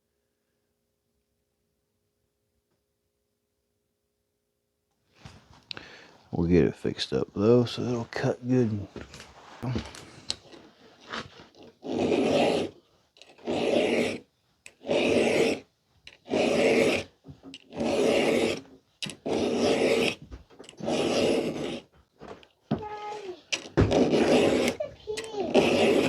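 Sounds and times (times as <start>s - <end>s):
file rasping on chainsaw chain: 11.8s - 21.9s, 22.8s - 26.0s.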